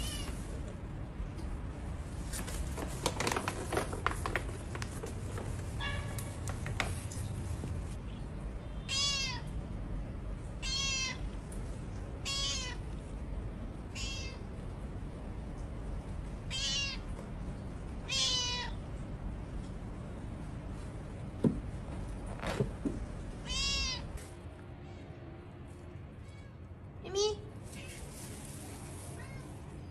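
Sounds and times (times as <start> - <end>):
cat meowing: 0.0 - 0.4, 8.8 - 9.5, 10.6 - 11.3, 12.2 - 12.9, 13.9 - 14.5, 16.5 - 17.1, 18.0 - 18.8, 23.4 - 24.2, 29.1 - 29.6.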